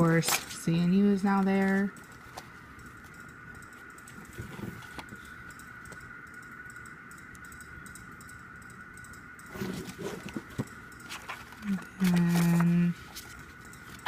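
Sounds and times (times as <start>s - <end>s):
card and paper rustling: 0.0s - 2.5s, 9.6s - 14.0s
faint high whine: 0.0s - 14.0s.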